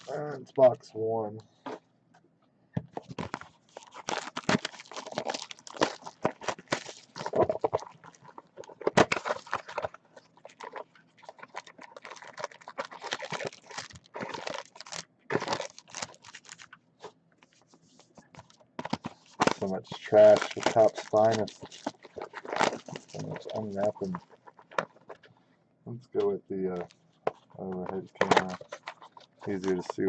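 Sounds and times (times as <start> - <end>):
wrappers tearing and crinkling: 3.1 - 16.8, 18.4 - 25.2, 27.6 - 30.0.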